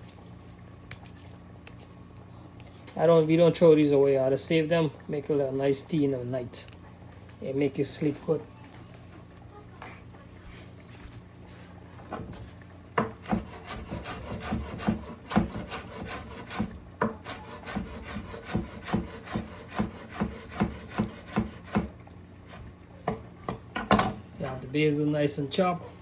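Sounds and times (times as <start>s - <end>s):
knife chopping on cutting board: 13.0s - 21.9s.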